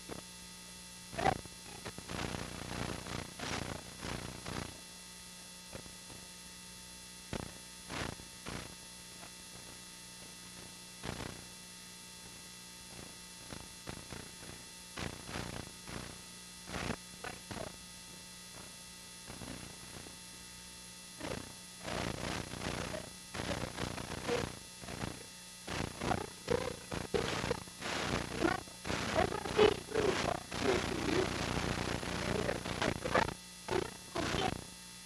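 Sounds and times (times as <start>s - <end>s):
electrical mains hum: 0.0s - 35.0s
short bursts of noise: 21.2s - 34.6s.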